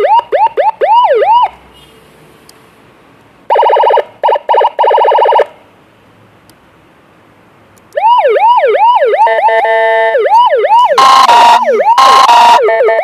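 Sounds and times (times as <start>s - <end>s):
electronic siren yelp: 0.0s - 1.5s, 3.5s - 5.5s, 8.0s - 13.0s
rapid siren warble: 3.5s - 5.4s, 8.0s - 13.0s.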